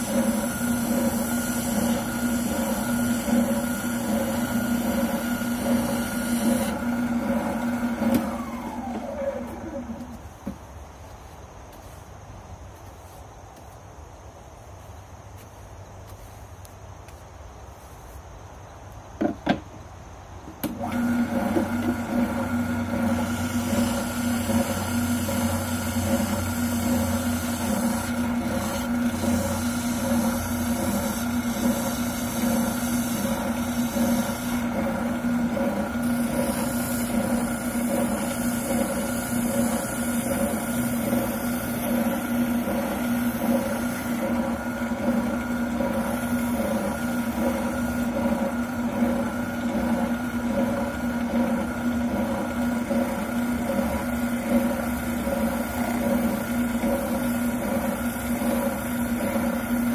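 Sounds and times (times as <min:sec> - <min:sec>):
sanding hiss: 0:00.0 - 0:06.8, 0:23.2 - 0:44.6
sander humming: 0:00.0 - 0:12.0, 0:20.6 - 0:59.9.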